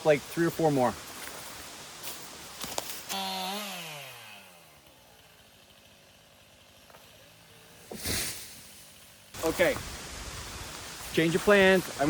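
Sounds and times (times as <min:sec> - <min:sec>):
chainsaw engine winding down: 0:02.9 - 0:09.6.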